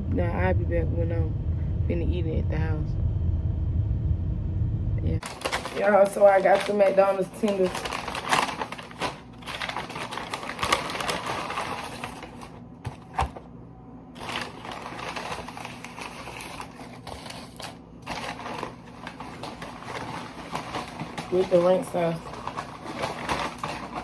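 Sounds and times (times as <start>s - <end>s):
paper bag crinkling and rustling: 5.2s - 13.4s, 14.2s - 24.0s.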